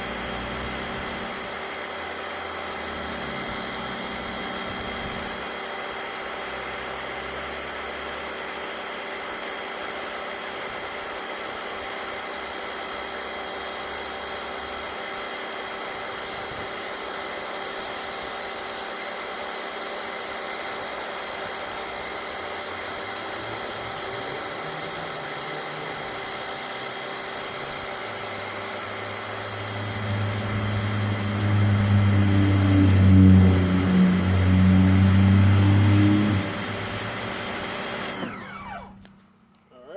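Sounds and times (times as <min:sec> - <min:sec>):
deep motor hum: 0:27.9 - 0:39.2.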